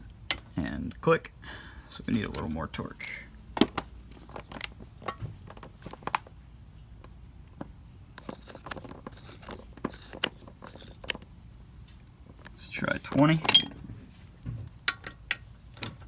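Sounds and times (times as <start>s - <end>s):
torque wrench and socket clinks: 13.4s - 13.8s.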